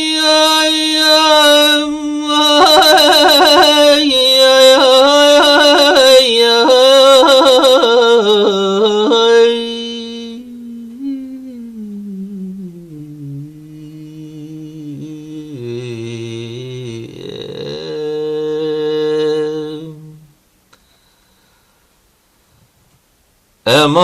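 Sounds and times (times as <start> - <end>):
man singing without words: 0.0 - 20.4, 23.6 - 24.0.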